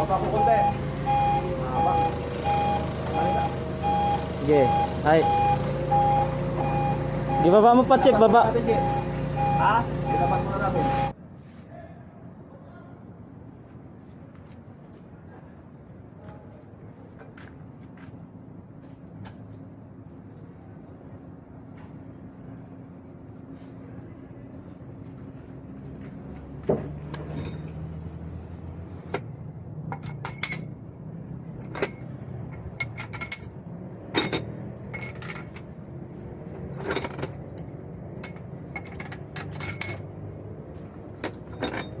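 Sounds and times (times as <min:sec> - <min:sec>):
low engine hum: 0:00.0 - 0:11.2, 0:20.5 - 0:42.0
metal tools clinking: 0:27.2 - 0:28.0, 0:29.9 - 0:30.8, 0:31.6 - 0:35.8, 0:36.8 - 0:42.0.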